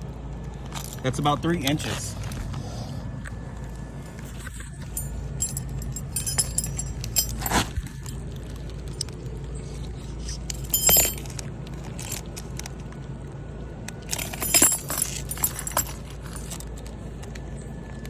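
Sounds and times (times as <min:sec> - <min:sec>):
steady low hum: 0:00.0 - 0:17.8
metallic clinking and jingling: 0:03.8 - 0:08.3, 0:09.7 - 0:12.5, 0:14.1 - 0:16.6.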